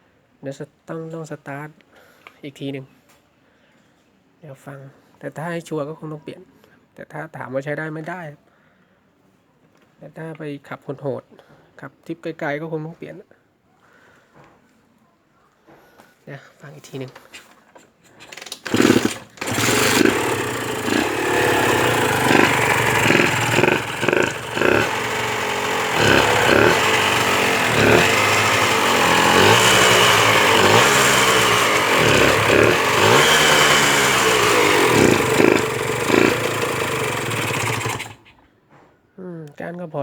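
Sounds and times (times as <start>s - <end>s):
two-stroke engine revving: 18.3s - 38.3s.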